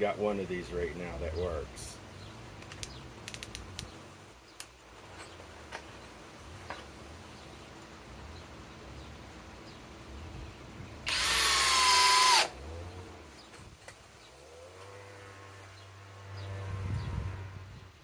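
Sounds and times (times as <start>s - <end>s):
drill driver whining: 11.1s - 12.6s.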